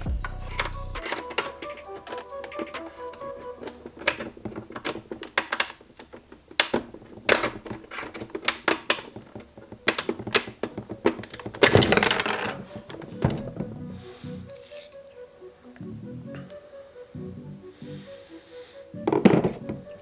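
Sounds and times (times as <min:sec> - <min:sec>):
plastic trim clicking and knocking: 0:00.5 - 0:13.6.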